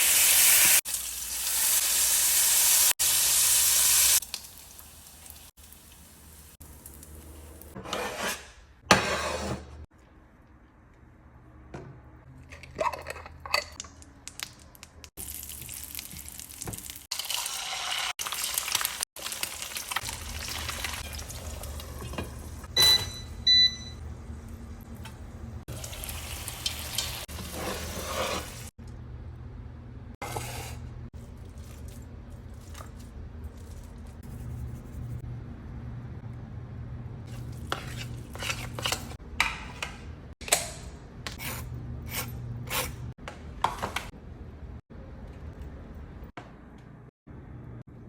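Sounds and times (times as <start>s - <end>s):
food sizzling in a pan: 0.0s - 7.1s, 15.2s - 22.0s
utensils scraping pots and pans: 7.8s - 9.8s, 37.3s - 40.0s
electronic appliance beeps: 22.6s - 24.0s.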